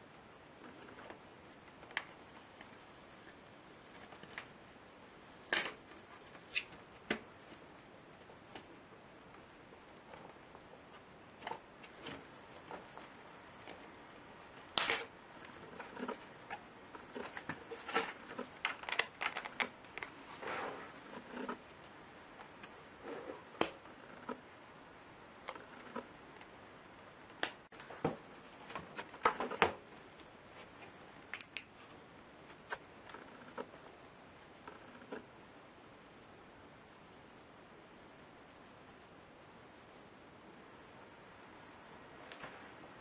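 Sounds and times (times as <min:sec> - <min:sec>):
laptop parts clicking and rattling: 0:17.2 - 0:20.2.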